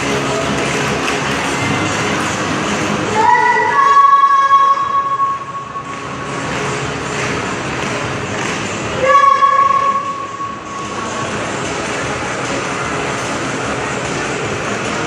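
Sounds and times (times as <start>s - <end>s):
loud background noise: 0.0s - 15.0s
horn-like tone: 9.0s - 11.0s.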